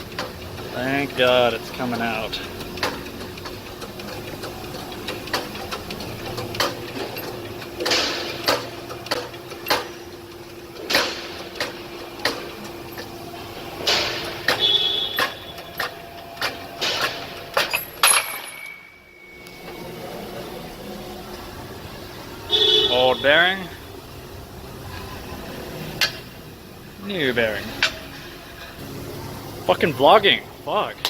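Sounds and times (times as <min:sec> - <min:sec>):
shop press metal clanks: 0:00.0 - 0:19.3.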